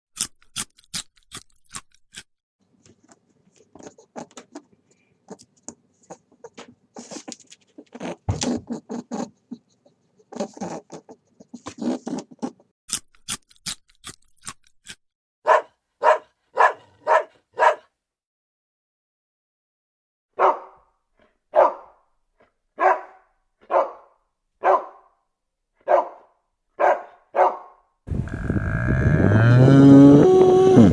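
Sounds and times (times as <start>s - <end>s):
scratching and rustling: 2.8s - 9.3s
dog barking: 15.4s - 17.9s, 20.4s - 20.9s, 21.5s - 22.0s, 22.8s - 25.1s, 25.8s - 27.8s.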